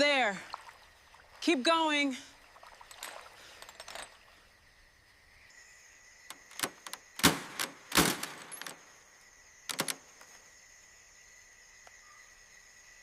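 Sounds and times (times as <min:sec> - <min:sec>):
sharp metallic clinks: 0:07.5 - 0:09.0.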